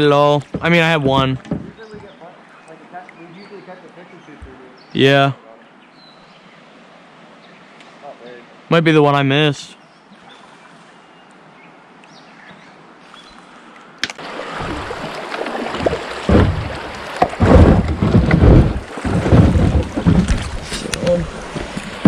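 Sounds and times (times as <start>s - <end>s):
rushing splashing rapids: 14.2s - 22.0s.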